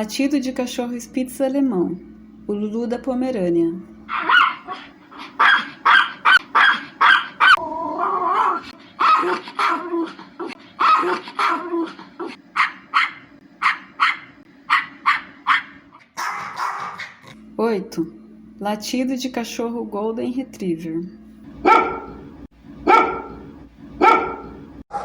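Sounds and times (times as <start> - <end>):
small dog yapping: 4.1 - 17.3, 24.0 - 24.4
dog whining: 4.1 - 17.4.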